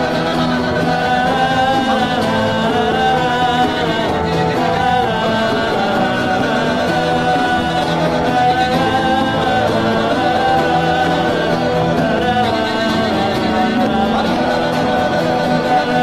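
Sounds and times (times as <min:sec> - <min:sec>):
church worship music: 0:00.0 - 0:16.0
crowd singing and praying aloud: 0:00.0 - 0:16.0.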